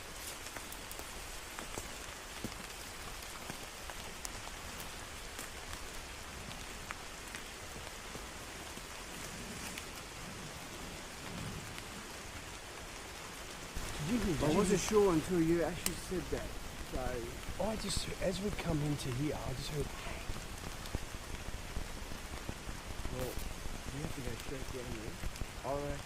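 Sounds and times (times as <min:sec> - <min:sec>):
drops hitting leaves: 0:00.0 - 0:26.0
steady rain falling: 0:00.0 - 0:26.0.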